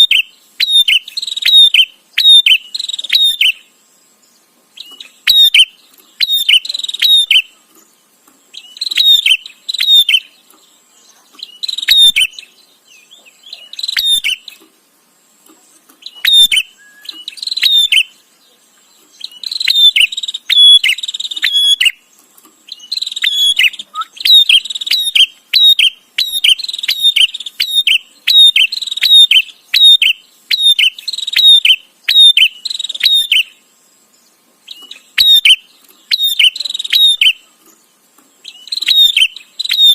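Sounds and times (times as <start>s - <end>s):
bird calling clicky high notes: 16.0s - 18.2s, 22.8s - 33.5s.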